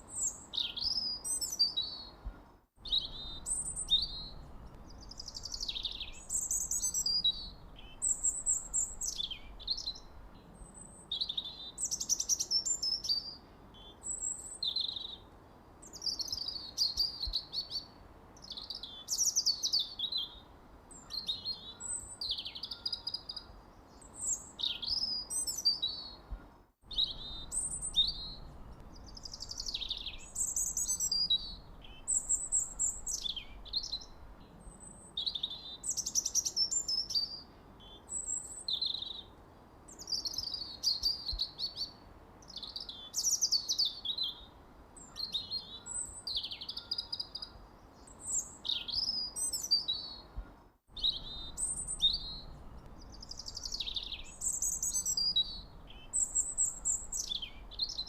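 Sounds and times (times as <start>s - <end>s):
songbirds chirping and singing: 0.1s - 15.3s, 15.9s - 39.3s, 39.9s - 58.0s.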